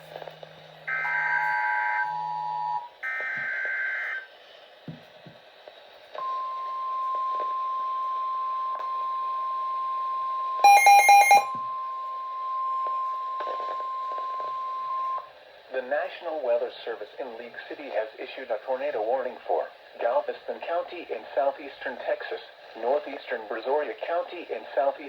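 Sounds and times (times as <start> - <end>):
steady alarm tone: 0.9 - 4.2, 10.6 - 11.9
shrill beeps: 10.6 - 11.7.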